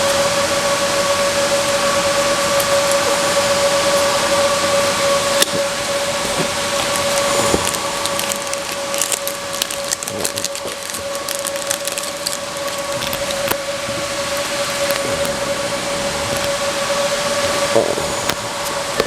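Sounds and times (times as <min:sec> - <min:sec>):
constant whine: 0:00.0 - 0:19.0
steady rushing hiss: 0:00.0 - 0:19.0
packaging crackling and clicking: 0:05.4 - 0:15.4.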